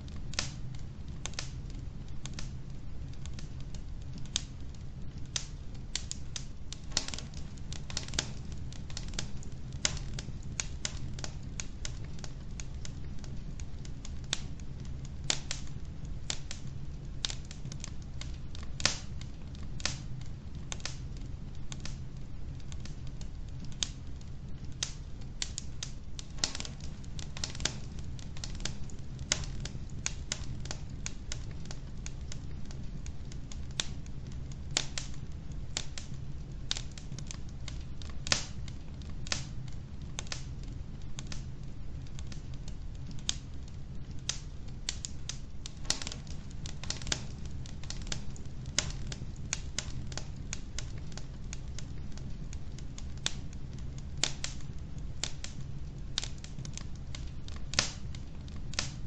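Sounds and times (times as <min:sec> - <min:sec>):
fire crackling and popping: 0:00.0 - 0:59.0.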